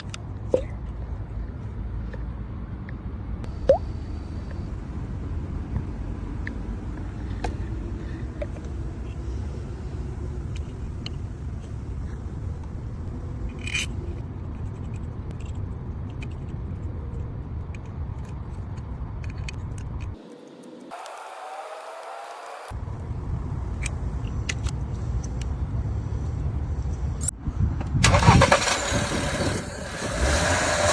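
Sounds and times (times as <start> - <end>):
car engine running: 28.0 - 30.9.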